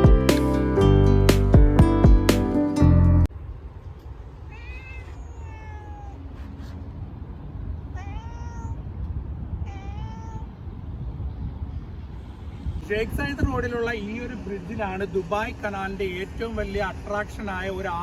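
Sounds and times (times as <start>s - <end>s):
acoustic guitar music: 0.0s - 3.3s
outdoor background noise: 3.3s - 18.0s.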